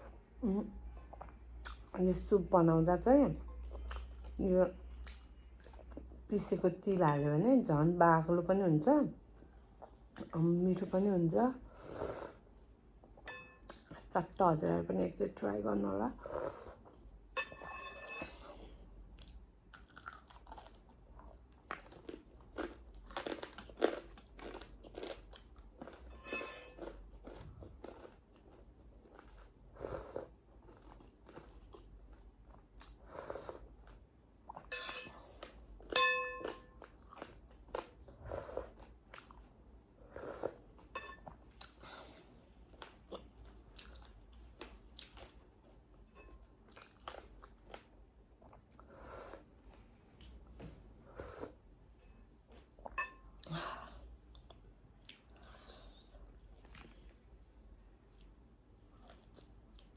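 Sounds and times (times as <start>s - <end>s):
crunching and chewing crisp food: 19.1s - 51.6s, 54.3s - 57.3s, 58.0s - 59.9s.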